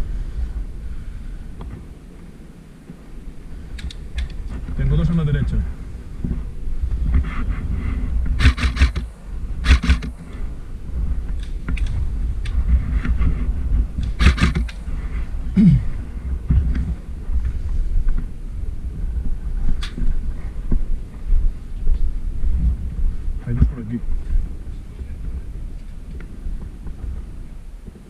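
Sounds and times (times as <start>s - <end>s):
wind rumble on microphone: 0.0s - 28.0s
airsoft gun rapid clicks: 8.4s - 10.1s, 14.0s - 14.8s.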